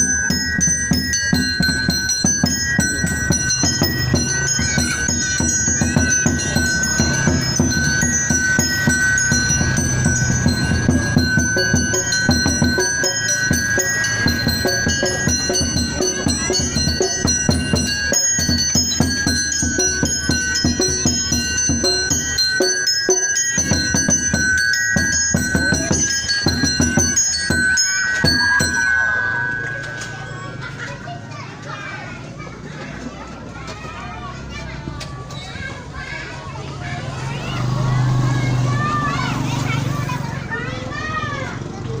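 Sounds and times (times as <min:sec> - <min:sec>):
steady drum beat: 0:00.0 - 0:30.8
held high tone: 0:00.0 - 0:32.0
metallic mallet percussion: 0:00.0 - 0:32.2, 0:37.3 - 0:41.4.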